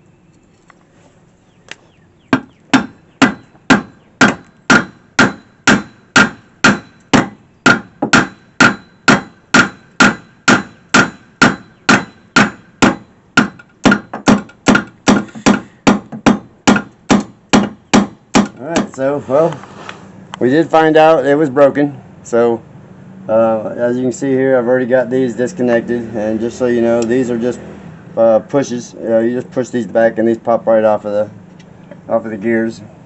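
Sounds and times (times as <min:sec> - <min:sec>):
hammer striking metal: 0:02.4 - 0:19.0.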